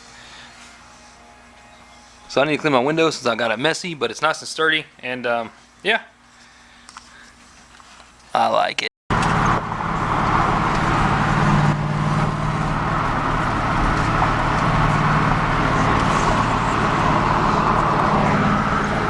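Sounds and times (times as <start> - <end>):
car engine humming: 9.1 - 19.0
road noise: 9.1 - 19.0.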